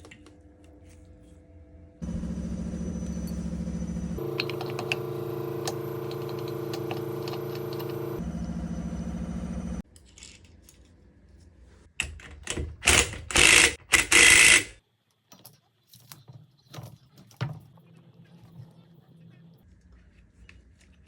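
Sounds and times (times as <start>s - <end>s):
steady hum: 2.0s - 9.8s.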